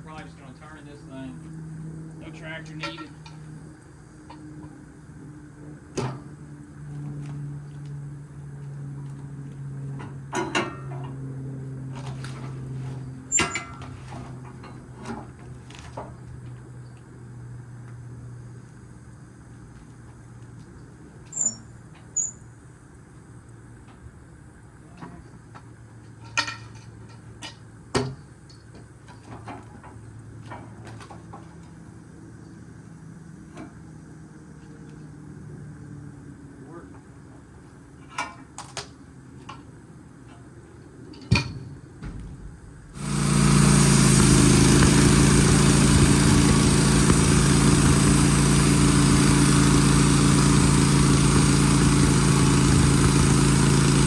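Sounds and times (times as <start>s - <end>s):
engine idling: 42.9s - 54.0s.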